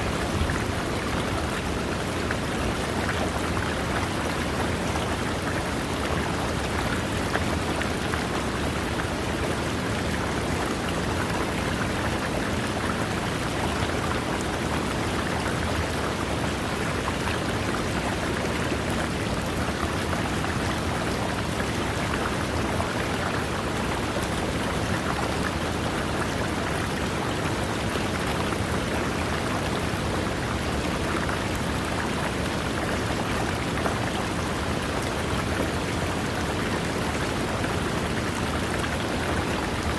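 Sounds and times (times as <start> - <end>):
river water running over rocks: 0.0 - 39.9.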